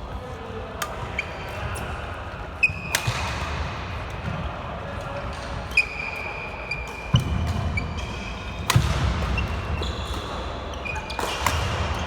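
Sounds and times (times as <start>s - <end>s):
racket hitting shuttlecock: 2.8s - 3.6s, 6.9s - 10.4s, 11.0s - 12.0s
shoes squeaking on court floor: 9.2s - 12.0s.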